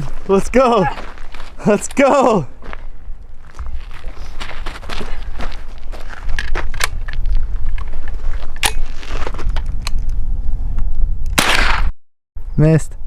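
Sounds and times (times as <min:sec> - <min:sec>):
loud sharp bang: 0:11.4 - 0:11.9.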